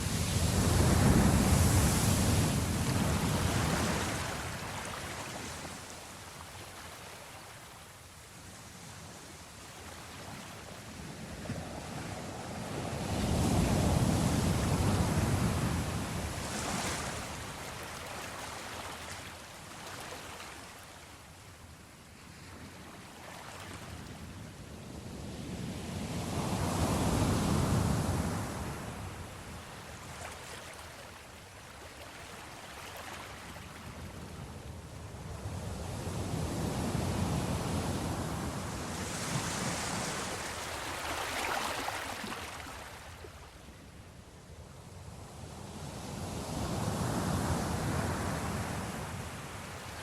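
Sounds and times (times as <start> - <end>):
ocean waves breaking: 0.0 - 6.0, 37.5 - 43.4.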